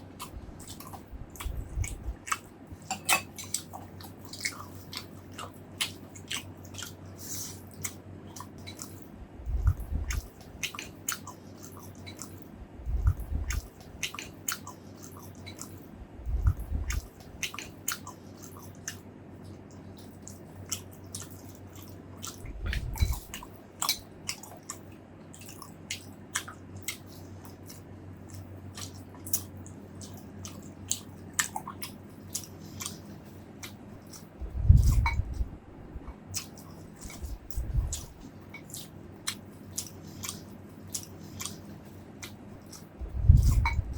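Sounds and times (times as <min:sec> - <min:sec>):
person chewing food: 0:00.0 - 0:43.9
dull low thumps: 0:09.2 - 0:10.2, 0:12.6 - 0:13.6, 0:16.0 - 0:17.0, 0:22.5 - 0:23.2, 0:34.4 - 0:36.1, 0:37.3 - 0:38.2, 0:43.0 - 0:43.9.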